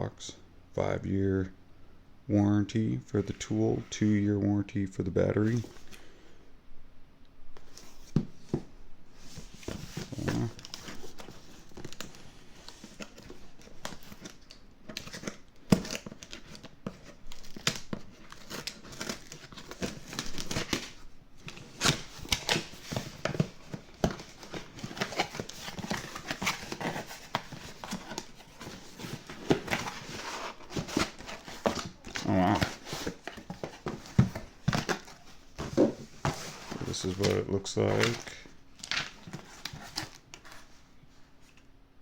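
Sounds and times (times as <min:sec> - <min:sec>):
packaging tearing and crinkling: 0:09.9 - 0:40.5.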